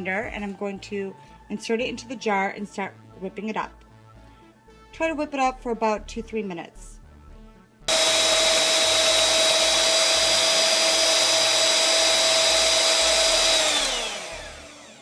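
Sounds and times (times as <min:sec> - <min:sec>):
hand blender whining: 0:07.9 - 0:15.0.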